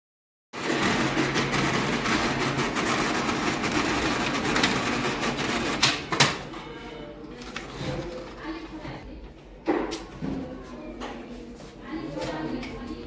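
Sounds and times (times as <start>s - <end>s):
copier mechanical clatter: 0.6s - 6.6s.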